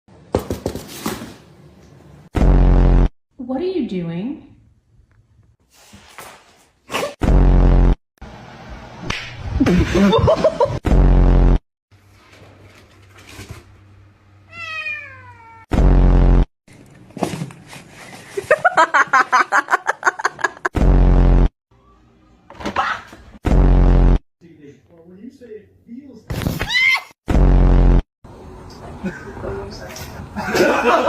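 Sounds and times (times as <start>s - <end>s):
loud low buzzing blasts: 2.3s - 3.1s, 7.2s - 9.8s, 10.8s - 11.6s, 15.7s - 16.5s, 20.8s - 21.5s, 23.4s - 24.2s, 27.3s - 28.0s
cats meowing: 14.5s - 15.7s.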